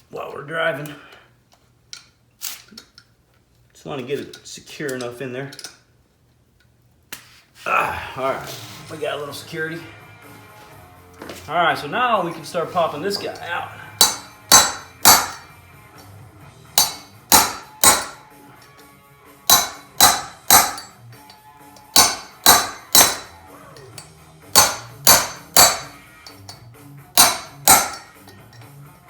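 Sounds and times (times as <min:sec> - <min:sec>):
slide hammer metallic clanks: 0:13.0 - 0:18.8, 0:19.5 - 0:28.8.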